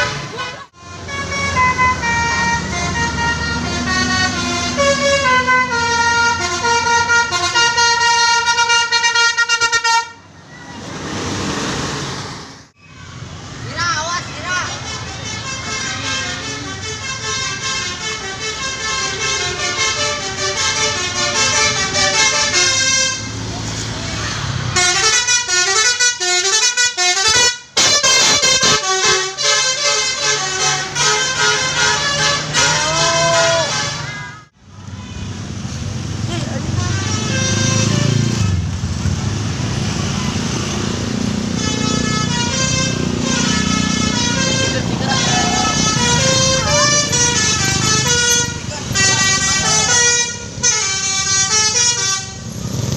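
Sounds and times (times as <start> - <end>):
musical vehicle horn melody: 0.0 - 10.2, 14.8 - 23.5, 24.7 - 35.5, 36.6 - 38.7, 41.4 - 52.7
low engine rumble: 41.0 - 52.9.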